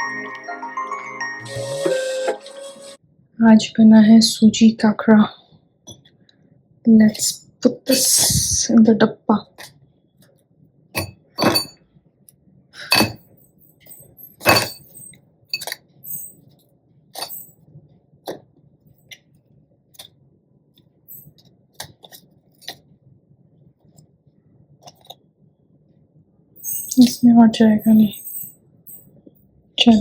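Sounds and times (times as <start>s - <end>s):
container and utensils clinking: 11.0s - 11.8s, 12.8s - 13.2s, 13.8s - 16.4s, 17.2s - 17.5s, 26.6s - 27.2s.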